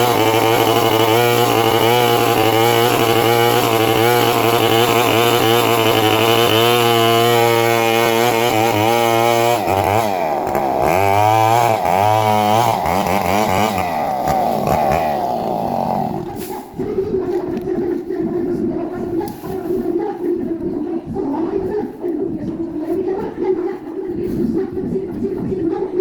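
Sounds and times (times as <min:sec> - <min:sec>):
chainsaw engine revving: 0:00.0 - 0:16.8.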